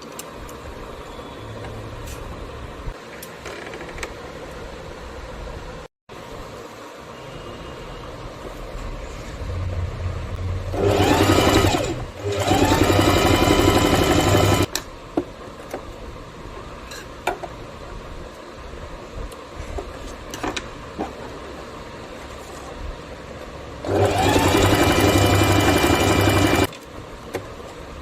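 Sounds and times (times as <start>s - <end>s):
sewing machine stitching: 10.7s - 14.7s, 23.8s - 26.7s.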